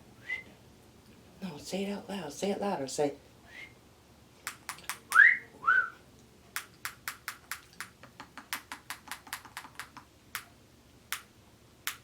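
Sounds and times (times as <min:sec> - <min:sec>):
parrot beak clicks: 0:04.4 - 0:05.2, 0:06.6 - 0:10.5.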